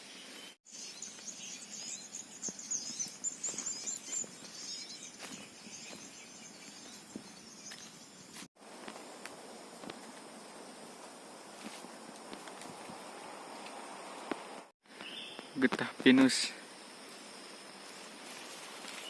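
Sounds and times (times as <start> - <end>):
small birds twittering: 0.0 - 8.5, 12.8 - 16.4.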